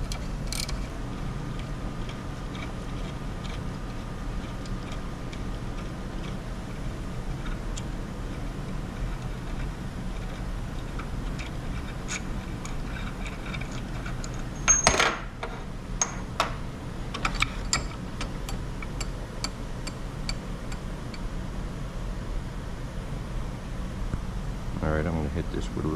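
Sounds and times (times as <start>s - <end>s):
low shop hum: 0.0s - 25.9s
ringing metal clank: 14.6s - 16.5s.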